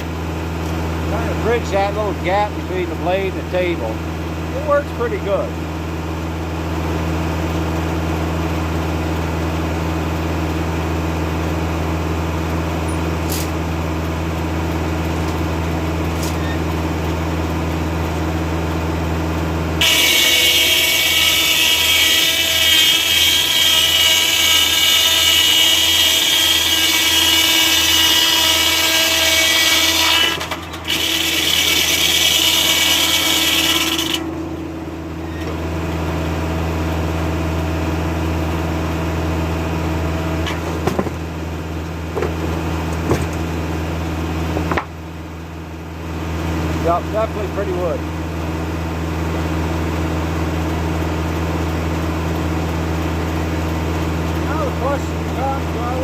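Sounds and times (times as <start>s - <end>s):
sawmill engine and blade humming: 0.0s - 56.0s
saw blade cutting log: 19.8s - 34.3s.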